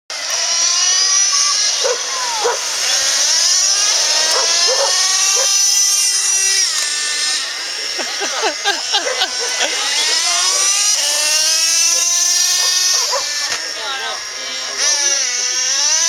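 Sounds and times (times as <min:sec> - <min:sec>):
toy car motors whining: 0:00.1 - 0:16.0
dog barking: 0:01.8 - 0:02.7, 0:04.2 - 0:05.6, 0:09.0 - 0:10.2, 0:11.9 - 0:13.4.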